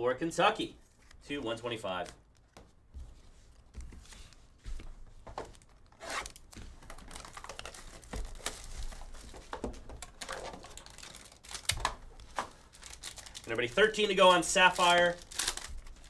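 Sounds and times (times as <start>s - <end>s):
wrapper crinkling and tearing: 5.6s - 16.0s.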